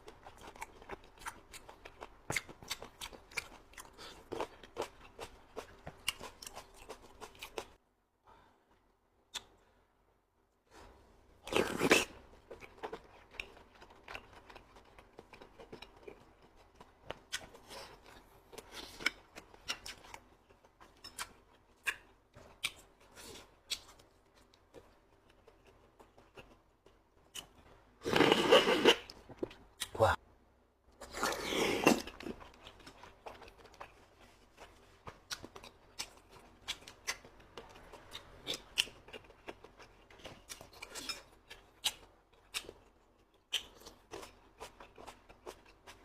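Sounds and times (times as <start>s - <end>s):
person chewing food: 0.0s - 7.8s, 10.8s - 30.2s, 31.0s - 46.0s.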